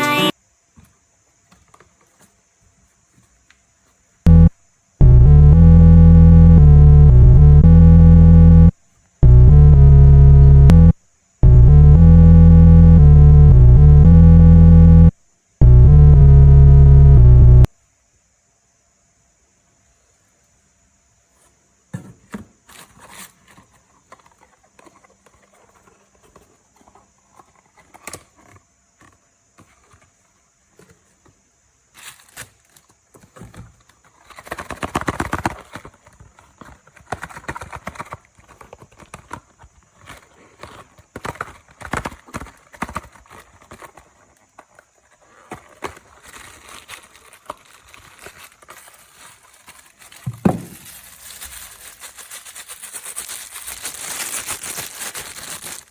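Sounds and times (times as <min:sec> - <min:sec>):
packaging crinkling: 0:43.0 - 0:55.9.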